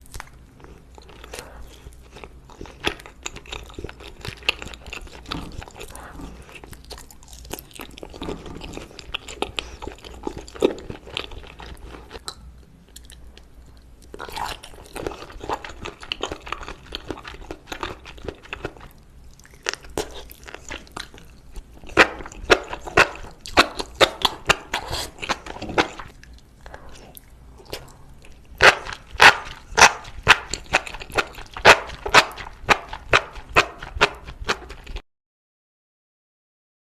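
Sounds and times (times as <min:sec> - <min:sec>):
person chewing and lip-smacking: 0:00.0 - 0:35.0.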